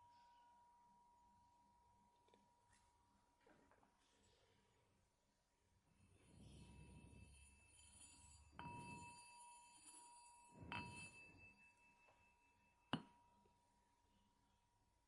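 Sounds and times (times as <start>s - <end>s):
faint bell ringing: 5.5s - 15.0s.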